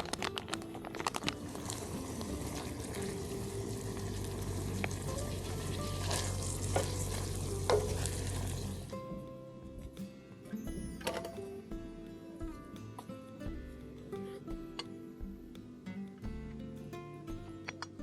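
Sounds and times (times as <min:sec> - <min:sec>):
utensil clicks stirring: 0:00.0 - 0:08.5
food sizzling in a pan: 0:00.0 - 0:09.0.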